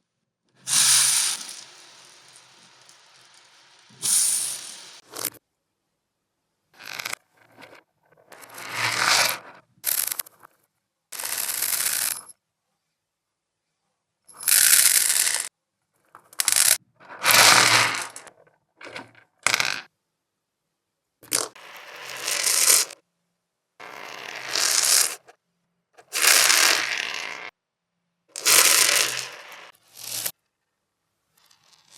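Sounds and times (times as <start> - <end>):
reversed bead rattling and crunching: 0.7 - 5.3, 14.4 - 15.5, 16.1 - 19.9, 21.2 - 23.0, 23.8 - 25.3, 26.0 - 27.5, 28.4 - 30.3.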